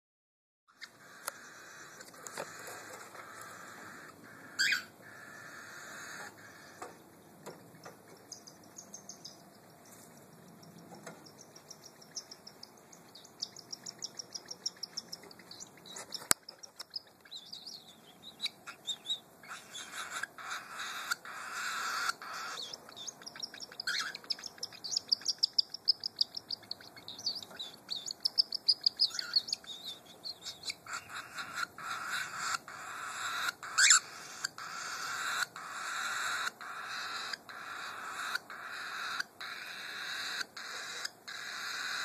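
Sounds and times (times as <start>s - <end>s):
chick high chirps: 10.6s - 42.0s.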